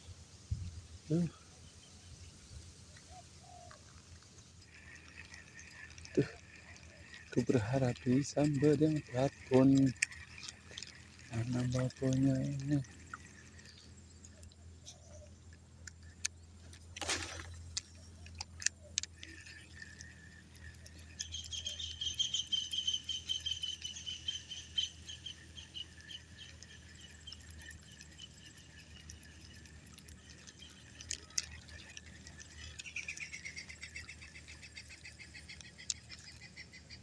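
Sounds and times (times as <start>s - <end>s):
sharp clicks: 3.0s - 37.0s
high-pitched pulsing animal trill: 3.8s - 15.4s.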